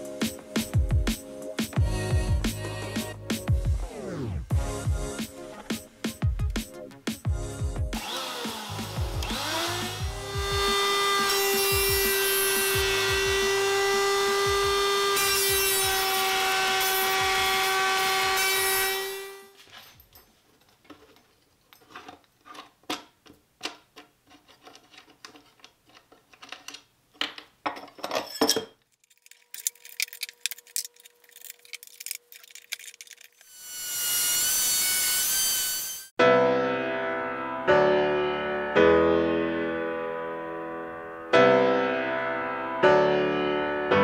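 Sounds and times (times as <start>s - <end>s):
router motor whining: 8.0s - 19.5s
wood knocking and scraping: 20.5s - 28.2s.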